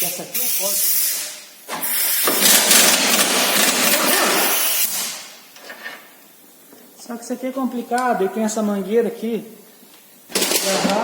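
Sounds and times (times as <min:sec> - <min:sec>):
pneumatic impact wrench hammering: 0:00.8 - 0:05.3, 0:10.3 - 0:11.0.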